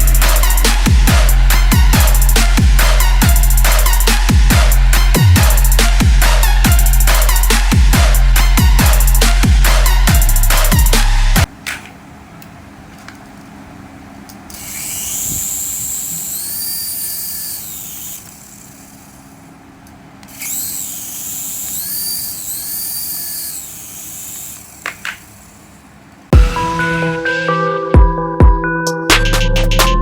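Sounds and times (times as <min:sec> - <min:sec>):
electric toy motor whirring: 0:14.5 - 0:19.4, 0:20.3 - 0:25.8.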